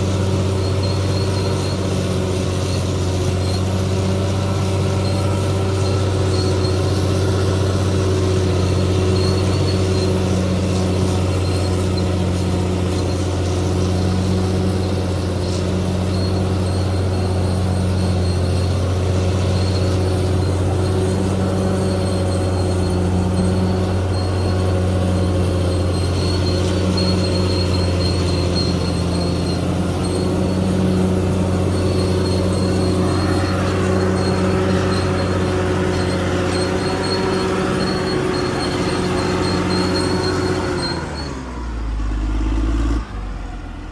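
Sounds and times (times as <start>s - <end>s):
faint high squeal: 0.0s - 42.3s
bulldozer diesel engine running: 0.0s - 43.9s.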